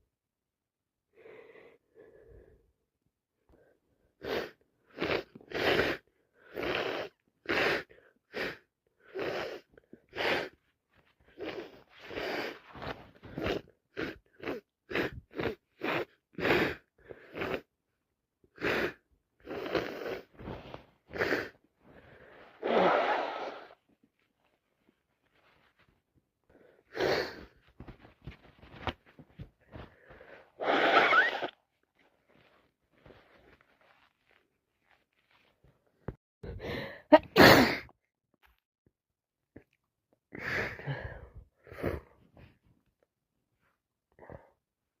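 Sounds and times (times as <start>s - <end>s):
woman sneezing: 37.1s - 37.9s.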